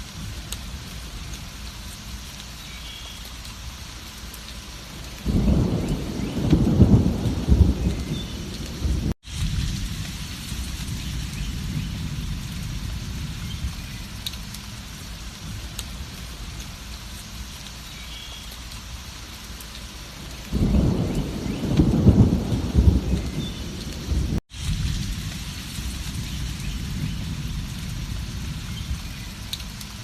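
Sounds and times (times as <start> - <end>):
heavy rain: 0.0 - 30.0
thunder rumbling: 5.2 - 16.8, 20.4 - 30.0.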